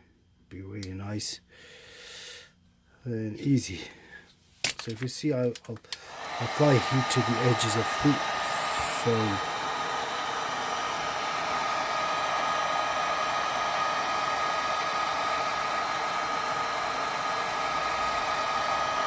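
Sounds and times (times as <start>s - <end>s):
heat gun blowing hiss with whine: 6.0s - 19.0s.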